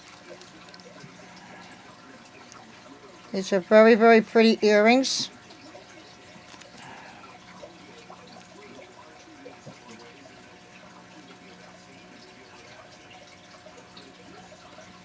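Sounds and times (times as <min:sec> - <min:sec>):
small clicks and rustles: 0:06.4 - 0:06.9.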